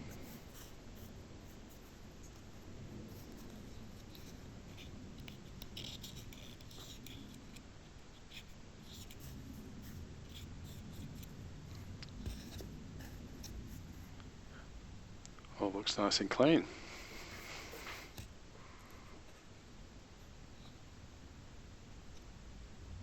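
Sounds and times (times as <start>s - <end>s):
cotton bud scratchy rubbing: 0.0s - 14.1s, 16.9s - 18.3s.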